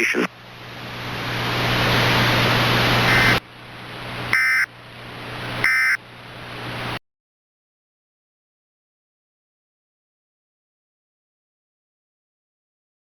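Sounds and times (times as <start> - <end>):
loud static hiss: 0.0 - 7.0
two-tone digital data squawk: 3.1 - 3.4, 4.3 - 4.7, 5.6 - 6.0.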